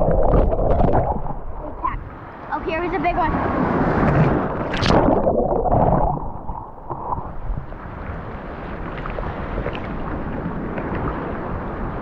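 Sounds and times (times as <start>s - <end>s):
sea water rushing: 0.0s - 12.0s
wind on microphone: 0.0s - 12.0s.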